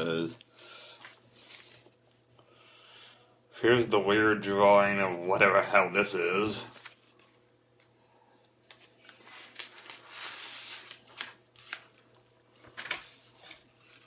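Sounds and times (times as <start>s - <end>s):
paper rustling and crinkling: 0.9s - 2.0s, 6.6s - 7.5s, 8.6s - 14.0s.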